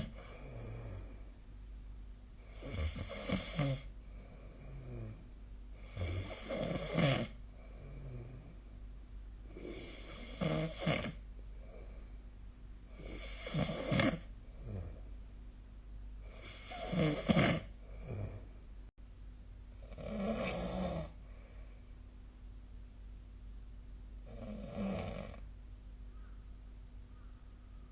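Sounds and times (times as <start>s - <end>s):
person snoring: 0.0s - 1.2s, 2.4s - 5.2s, 5.8s - 8.6s, 9.5s - 12.0s, 12.9s - 15.1s, 16.2s - 18.6s, 19.8s - 21.2s, 24.2s - 25.5s
quiet breaths: 0.0s - 19.0s, 19.6s - 22.3s, 24.2s - 27.9s.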